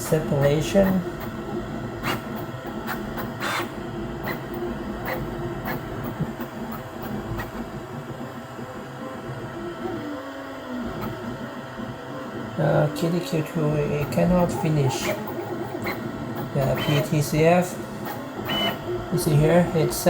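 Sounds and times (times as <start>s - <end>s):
stepper motors whining: 9.2s - 20.0s
fan tone: 12.6s - 20.0s.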